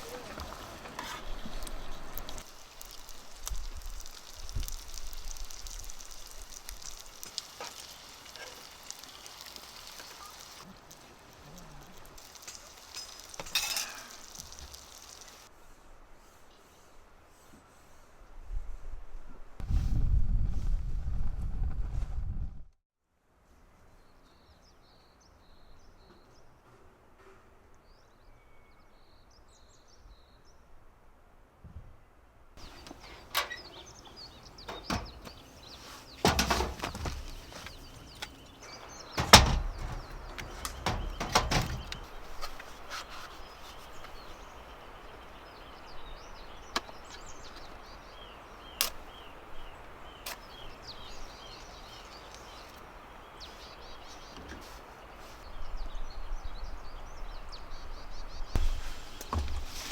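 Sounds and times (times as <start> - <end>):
knocks and clunks: 32.6 - 42.6.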